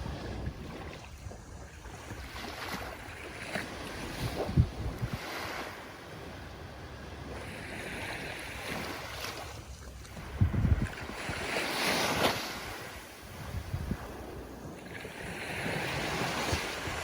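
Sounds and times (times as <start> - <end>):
ocean waves washing in: 0.0 - 17.0
wind thumps on microphone: 3.5 - 5.3, 10.1 - 17.0.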